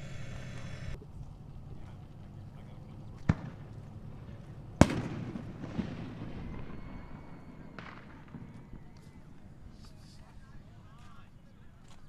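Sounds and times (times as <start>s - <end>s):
firework bang: 3.2s - 10.6s
small firework pops: 3.2s - 12.0s.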